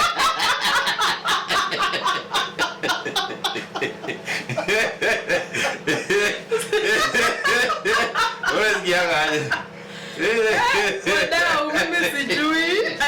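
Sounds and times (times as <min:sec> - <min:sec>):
people laughing: 0:00.0 - 0:13.0
people talking: 0:06.8 - 0:09.6, 0:10.2 - 0:13.0.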